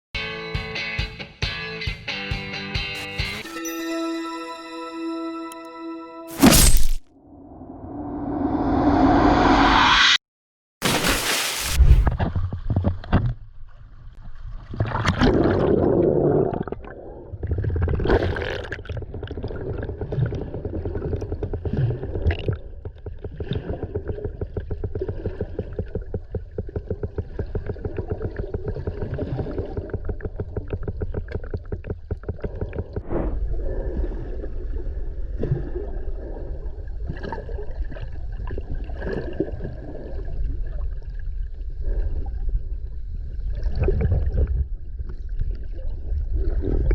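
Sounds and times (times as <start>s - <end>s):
underwater low rumble: 11.8s - 46.9s
gurgling bubbles: 14.6s - 46.9s.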